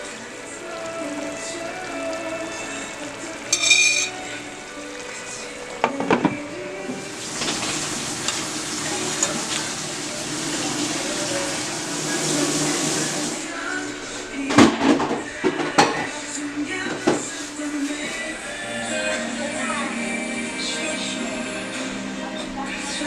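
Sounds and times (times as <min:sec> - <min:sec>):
meat sizzling in a pan: 0:00.0 - 0:13.5
metal utensil clanking on pan: 0:03.5 - 0:04.2.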